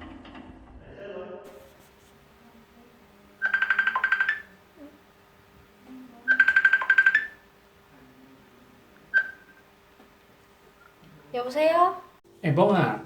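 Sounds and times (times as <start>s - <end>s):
phone ringing: 3.4s - 4.6s, 6.2s - 7.6s, 9.1s - 9.7s.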